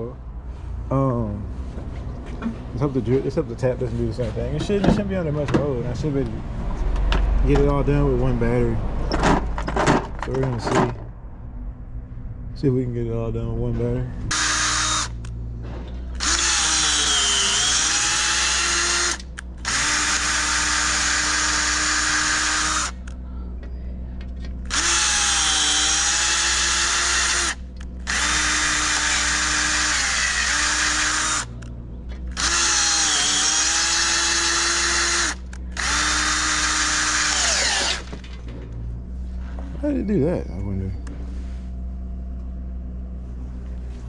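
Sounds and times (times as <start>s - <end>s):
cordless drill motor whining: 14.3s - 15.3s, 16.1s - 23.2s, 24.6s - 31.7s, 32.3s - 38.2s.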